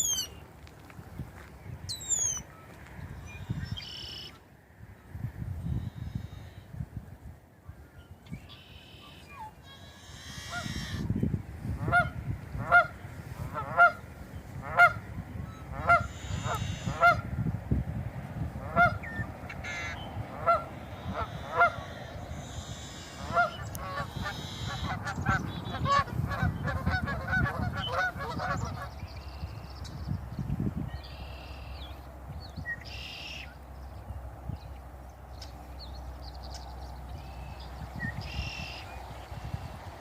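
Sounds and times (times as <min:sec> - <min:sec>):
geese honking: 0:00.0 - 0:00.4, 0:08.5 - 0:11.1, 0:11.8 - 0:17.3, 0:18.6 - 0:29.6.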